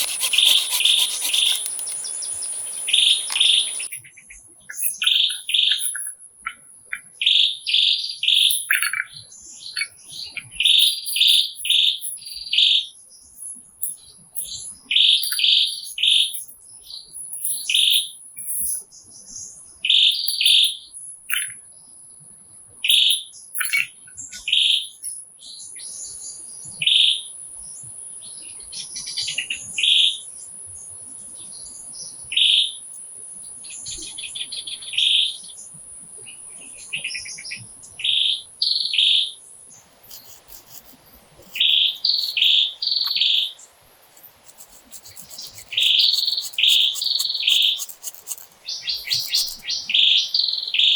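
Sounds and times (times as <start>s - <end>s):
birds chirping: 0.0s - 7.1s, 39.8s - 50.9s.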